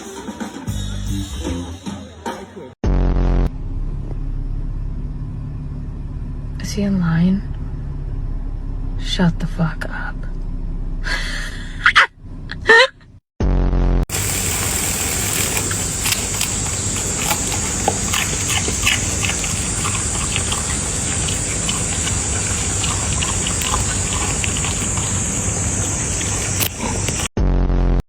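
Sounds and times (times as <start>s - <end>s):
steady hiss: 14.1s - 27.3s
dog making short noises: 15.4s - 27.3s.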